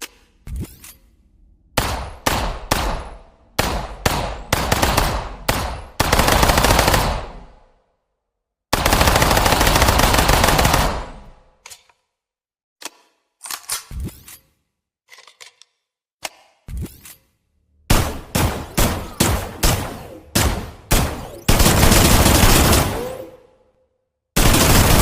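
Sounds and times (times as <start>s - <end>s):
submachine gun firing: 3.6s - 7.4s, 8.8s - 11.2s, 17.9s - 23.4s, 24.4s - 25.0s.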